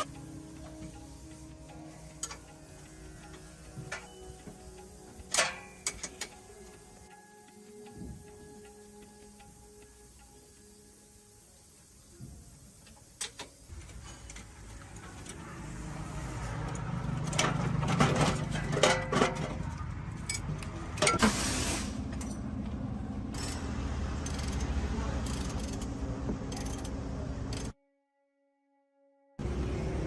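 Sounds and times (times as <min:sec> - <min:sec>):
vehicle engine rumbling: 0:13.6 - 0:27.8, 0:29.4 - 0:30.0.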